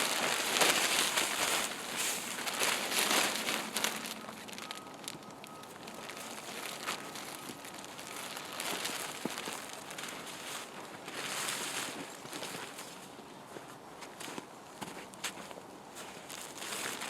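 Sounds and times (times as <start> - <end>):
tent fabric rustling: 0.0 - 13.2.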